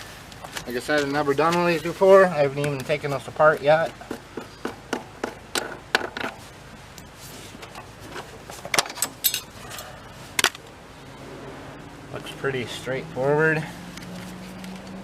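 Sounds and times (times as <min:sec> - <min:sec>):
clicks and rattles of handled parts: 0:07.6 - 0:10.6.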